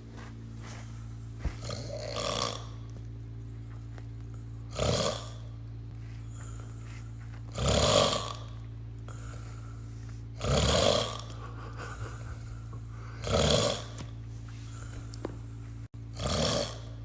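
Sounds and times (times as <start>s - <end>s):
man snoring heavily: 1.6s - 2.8s, 4.7s - 5.6s, 7.5s - 14.0s, 16.1s - 17.0s.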